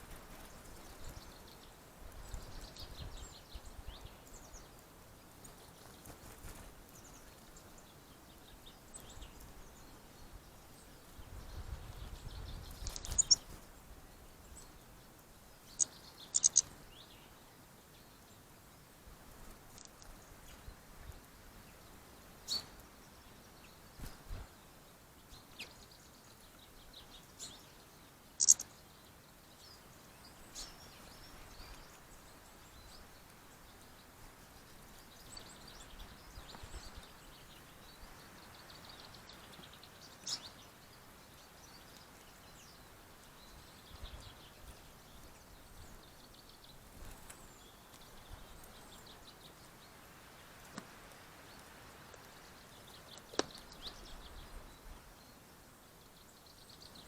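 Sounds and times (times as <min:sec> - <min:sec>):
bird chirps and trills: 0:05.4 - 0:13.6, 0:15.6 - 0:17.4, 0:22.4 - 0:24.2, 0:25.3 - 0:50.0
sharp clicks: 0:28.4 - 0:28.6.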